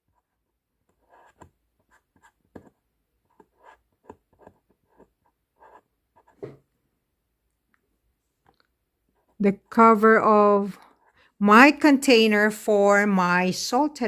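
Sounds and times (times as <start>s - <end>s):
pen writing on plastic: 0.0s - 6.5s.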